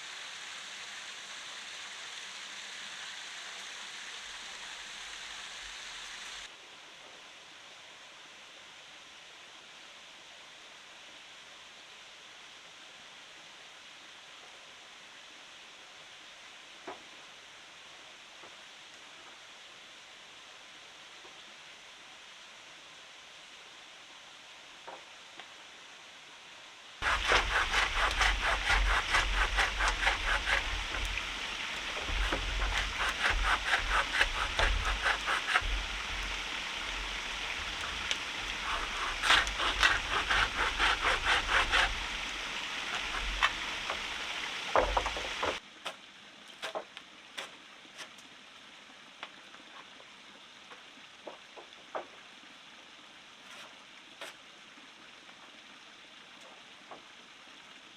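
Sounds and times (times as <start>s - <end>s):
hand saw cutting wood: 27.0s - 45.6s, 46.6s - 48.2s.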